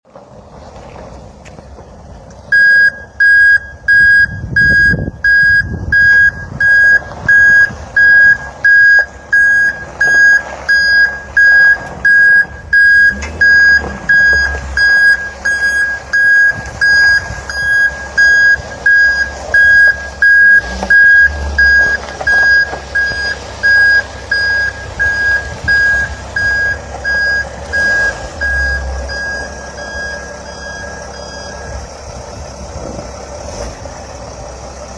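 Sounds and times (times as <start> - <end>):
low engine rumble: 0.0 - 34.9
reversing alarm beeps: 2.5 - 31.8.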